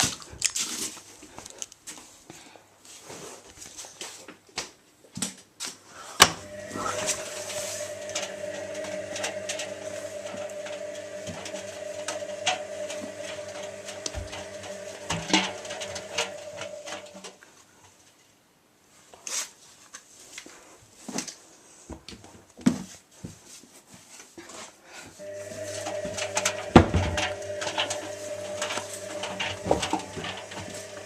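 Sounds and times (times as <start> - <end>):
washing machine motor hum: 6.4 - 17.4, 25.2 - 31.0.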